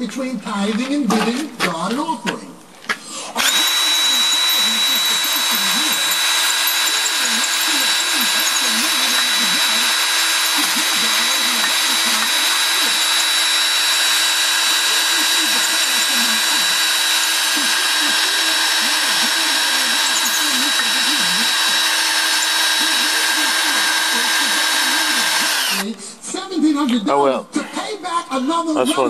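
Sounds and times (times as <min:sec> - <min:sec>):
electric drill whining: 0:03.4 - 0:25.9.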